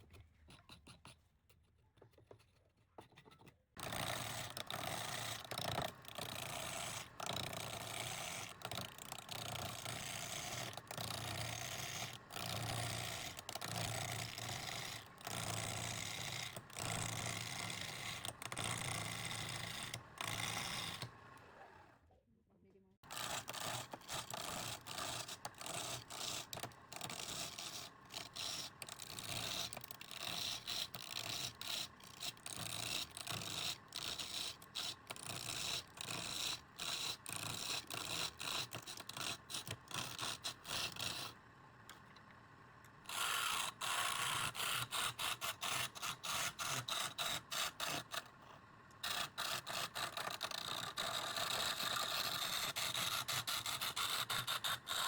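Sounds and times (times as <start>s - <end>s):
lathe tool scraping wood: 9.7s - 21.3s, 23.1s - 41.4s, 49.0s - 55.0s.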